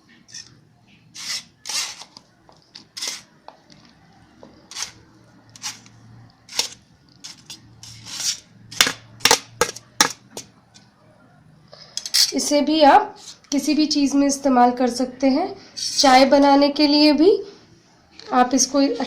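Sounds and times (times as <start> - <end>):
utensil scraping a strainer: 0.3 - 2.2, 2.8 - 3.4, 4.6 - 8.5.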